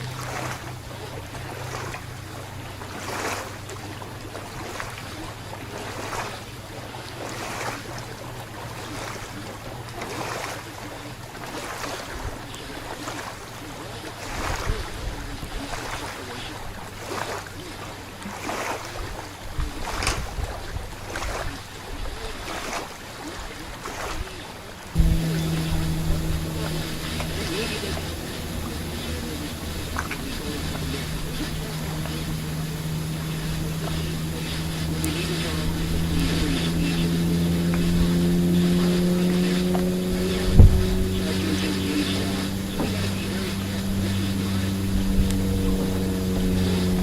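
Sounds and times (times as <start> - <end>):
motor drone: 0.0 - 10.8, 25.0 - 47.0
water swishing against boat: 0.0 - 47.0
low hum: 25.0 - 47.0
wind rumbling on microphone: 25.0 - 47.0.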